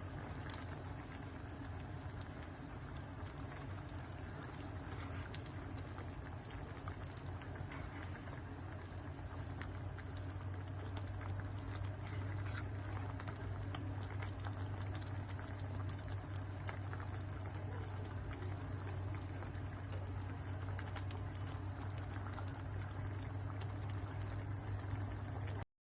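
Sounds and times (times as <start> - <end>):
low hum: 0.0 - 25.6
stew bubbling in a pot: 0.0 - 25.7.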